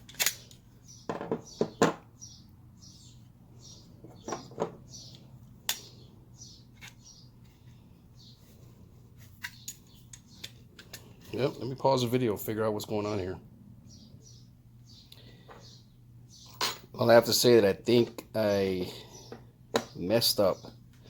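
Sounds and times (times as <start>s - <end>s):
pistol slide metallic clicks: 0.1s - 0.6s.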